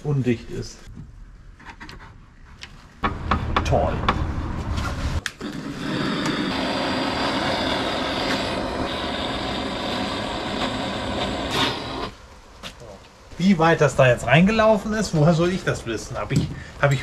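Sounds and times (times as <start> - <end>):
gas torch flame hissing: 4.8 - 12.3.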